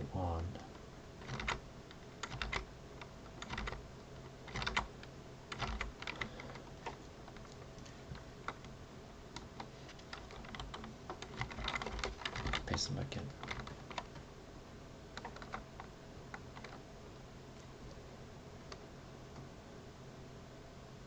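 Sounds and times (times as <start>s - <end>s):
faint low hum: 0.0s - 21.0s
keyboard keys clicking: 1.2s - 1.6s, 2.2s - 3.8s, 4.5s - 4.9s, 5.5s - 8.7s, 9.4s - 12.8s, 13.4s - 14.2s, 15.2s - 16.8s.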